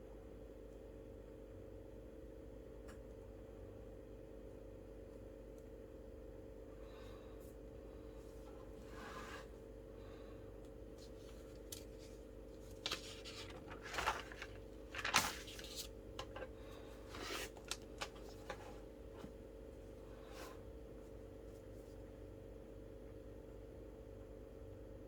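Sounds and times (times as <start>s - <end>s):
low electrical hum: 0.0s - 25.0s
paper rustling: 11.0s - 19.3s.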